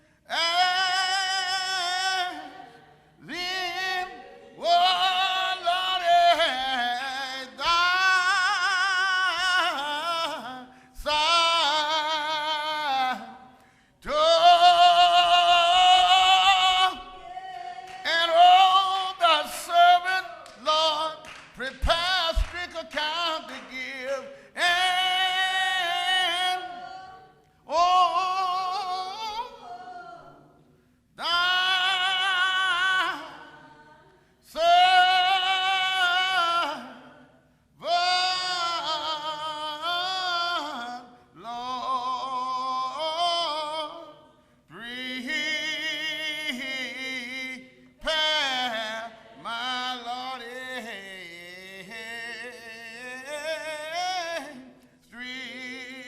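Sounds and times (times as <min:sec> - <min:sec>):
voices singing a hymn: 0:00.0 - 0:56.0.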